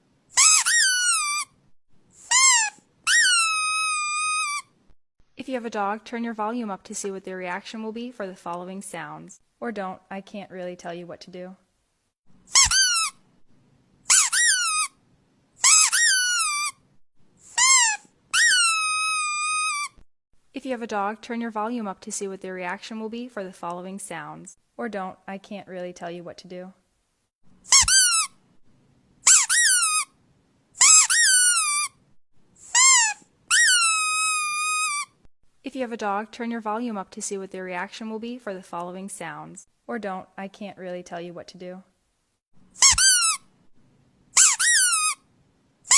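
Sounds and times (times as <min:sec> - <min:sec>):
high-pitched squeaks: 0:00.4 - 0:01.6, 0:02.2 - 0:04.7, 0:12.5 - 0:13.2, 0:14.1 - 0:14.9, 0:15.6 - 0:16.8, 0:17.5 - 0:20.0, 0:27.7 - 0:28.3, 0:29.3 - 0:30.1, 0:30.8 - 0:32.0, 0:32.6 - 0:35.1, 0:42.8 - 0:43.4, 0:44.4 - 0:45.2.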